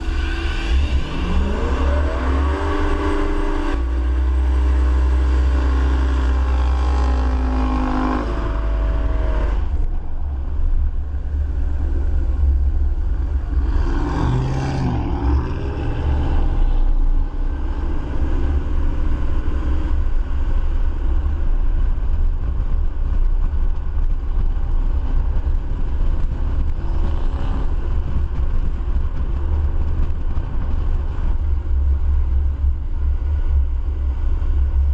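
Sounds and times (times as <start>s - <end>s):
car engine revving: 0.0s - 21.1s.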